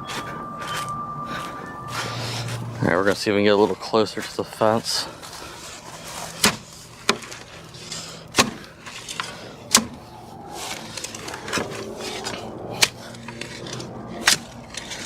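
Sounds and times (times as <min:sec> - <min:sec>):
shovel scraping: 0:10.6 - 0:15.0.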